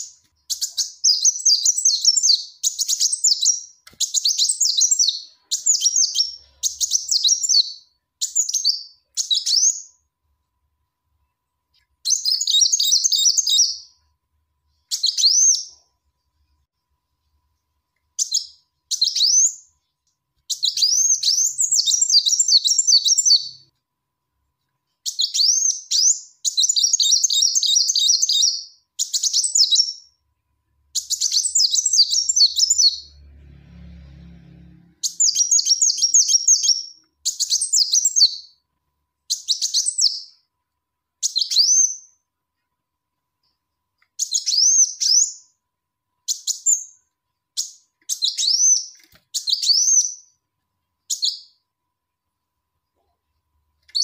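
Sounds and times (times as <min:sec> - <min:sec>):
faint low hum: 0:28.8 - 0:44.3
sunbird twittering: 0:35.0 - 0:38.5.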